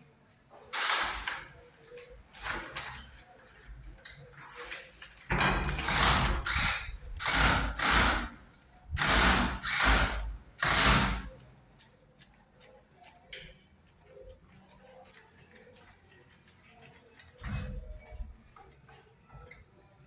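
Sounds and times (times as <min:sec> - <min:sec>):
ratcheting screwdriver clicking: 0:05.8 - 0:11.4.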